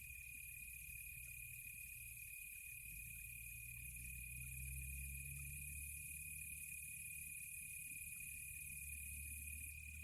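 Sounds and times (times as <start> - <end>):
insect trill and chirring: 0.0 - 10.0.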